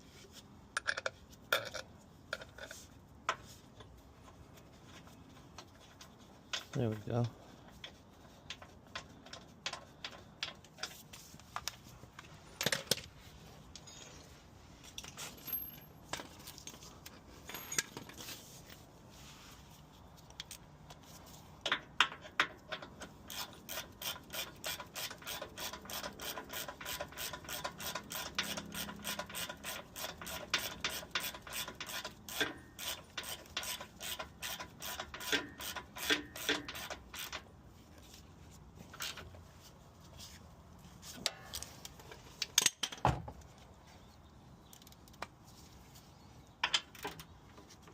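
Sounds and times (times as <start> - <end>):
ratchet wrench clicking: 23.3 - 37.4.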